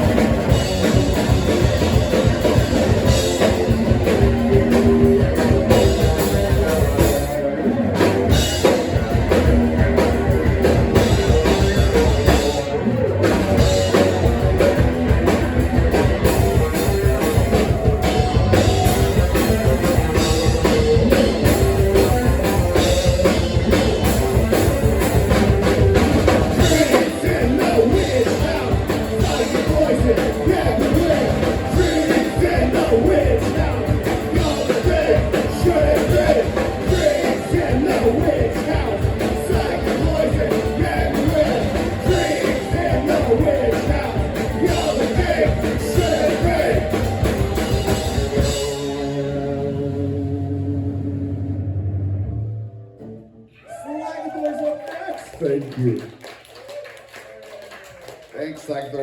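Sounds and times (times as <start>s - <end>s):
rock band playing live: 0.0s - 53.4s
person singing: 26.6s - 50.4s.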